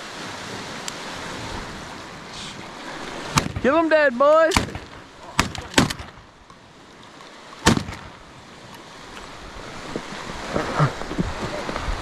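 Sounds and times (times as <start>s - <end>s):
waves washing on shore: 0.0s - 12.0s
shotgun shots: 3.4s - 3.7s, 4.5s - 6.2s, 7.6s - 8.2s.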